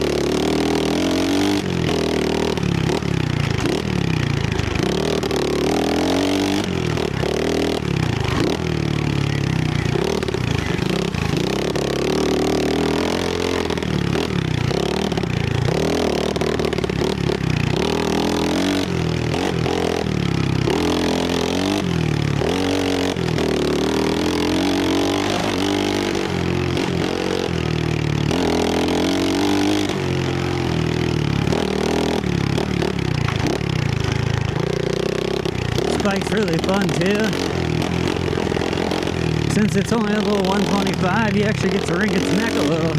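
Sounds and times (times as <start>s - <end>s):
motorbike engine revving: 0.0s - 42.9s.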